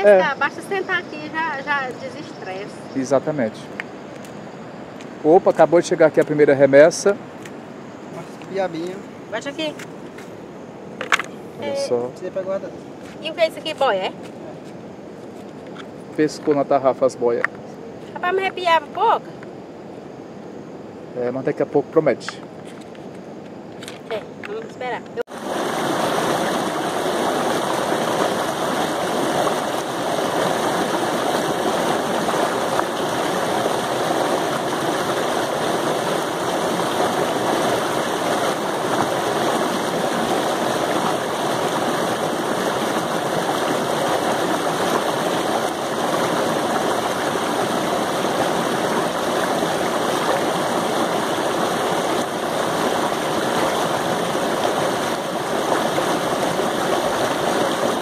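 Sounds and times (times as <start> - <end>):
water rushing over rocks: 25.2 - 58.0.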